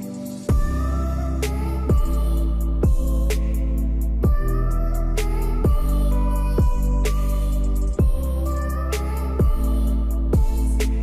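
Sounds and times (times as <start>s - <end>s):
mellow electronic music: 0.0s - 11.0s
booming kick drums: 0.5s - 0.8s, 1.9s - 2.2s, 2.8s - 3.1s, 4.2s - 4.5s, 5.7s - 5.9s, 6.6s - 6.8s, 8.0s - 8.2s, 10.4s - 10.6s.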